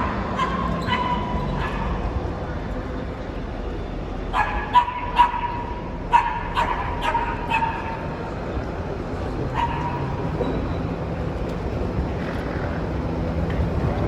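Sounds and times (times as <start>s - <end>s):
dog barking: 4.3s - 8.0s, 9.6s - 10.1s.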